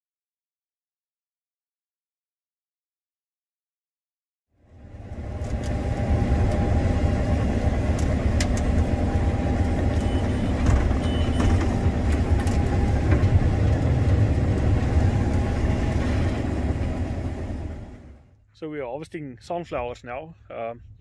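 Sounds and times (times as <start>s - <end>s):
combine harvester droning: 4.6s - 18.4s
faint whine: 4.7s - 18.3s.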